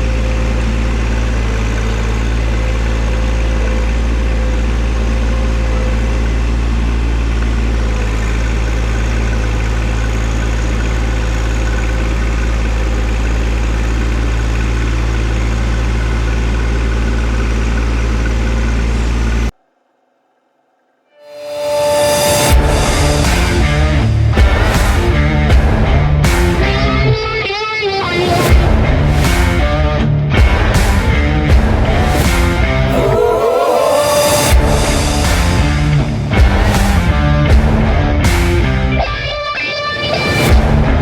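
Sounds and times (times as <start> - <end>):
tractor diesel engine running: 0.0 - 19.5.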